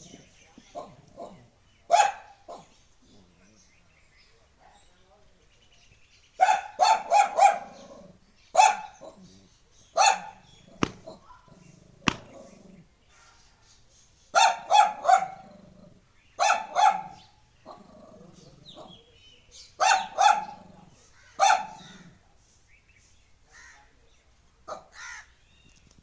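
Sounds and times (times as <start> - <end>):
dog barking: 0.8 - 2.7, 6.4 - 7.8, 8.6 - 9.2, 10.0 - 11.6, 14.4 - 15.5, 16.4 - 17.8, 19.8 - 20.7, 21.4 - 22.1, 24.7 - 24.9.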